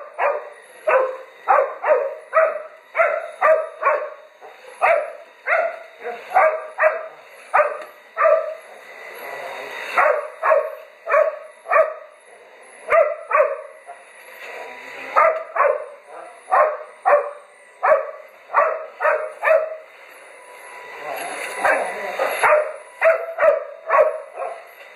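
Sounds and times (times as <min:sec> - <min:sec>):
dog barking: 0:00.0 - 0:08.6, 0:10.0 - 0:12.1, 0:12.9 - 0:13.7, 0:15.2 - 0:19.8, 0:21.6 - 0:24.7.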